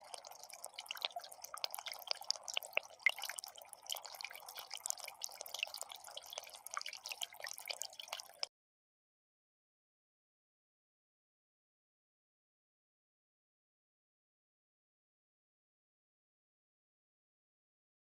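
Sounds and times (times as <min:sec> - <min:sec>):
fountain water trickling: 0:00.0 - 0:08.5.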